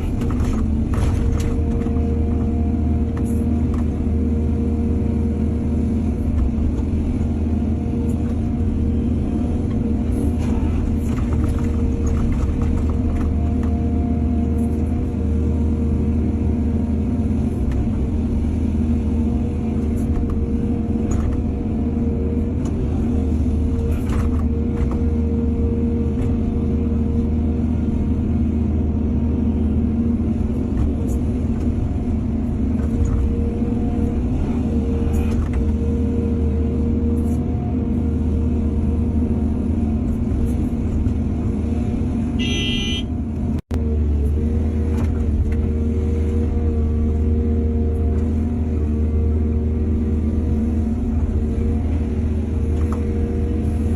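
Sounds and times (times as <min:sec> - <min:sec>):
knocks and clanks of digging: 0:00.0 - 0:02.0
diesel excavator engine running: 0:00.0 - 0:53.9.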